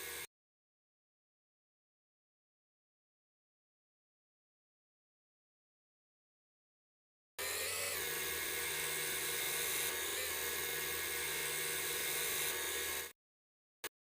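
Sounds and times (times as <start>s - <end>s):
turning tool cutting wood: 0.0s - 0.3s, 7.4s - 13.2s
wood lathe motor hum: 0.0s - 0.3s, 7.4s - 13.1s.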